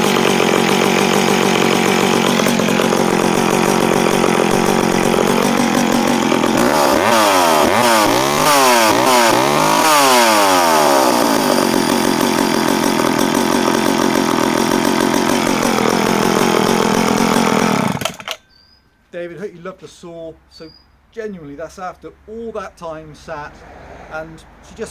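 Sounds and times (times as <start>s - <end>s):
chainsaw revving: 0.0s - 18.4s.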